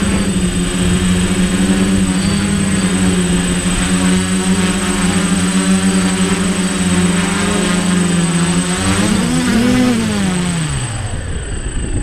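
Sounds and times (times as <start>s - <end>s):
quadcopter propellers buzzing: 0.0s - 12.0s.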